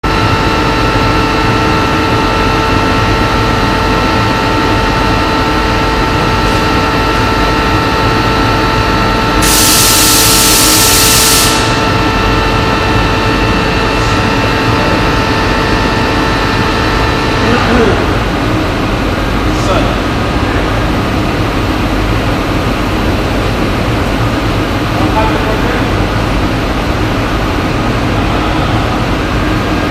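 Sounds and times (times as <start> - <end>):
loud high hiss: 9.4 - 12.0
plasma cutter hissing roar: 9.4 - 12.4.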